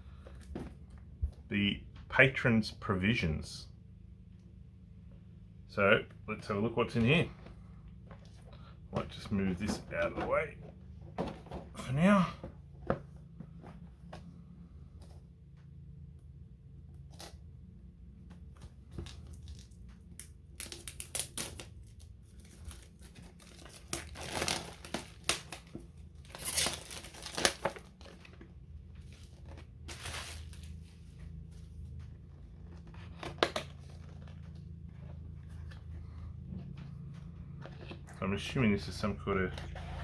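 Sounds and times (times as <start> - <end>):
packaging crinkling and tearing: 18.9 - 30.8.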